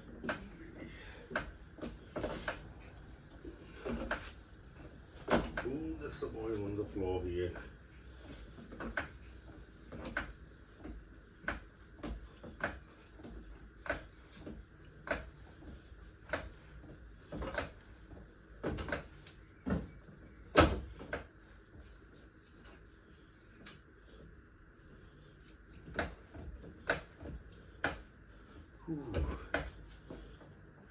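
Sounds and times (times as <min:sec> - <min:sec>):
trolley jack pump clunks: 0:05.2 - 0:06.2.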